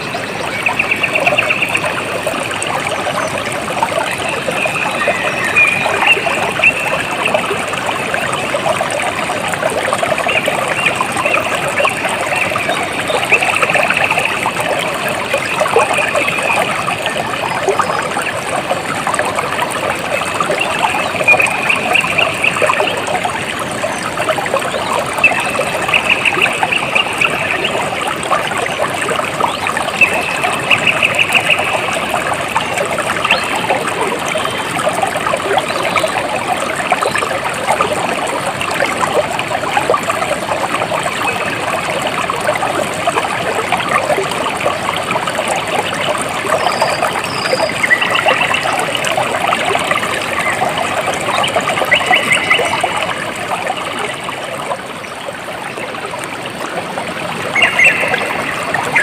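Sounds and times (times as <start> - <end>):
stream trickling and babbling: 0.0 - 59.0.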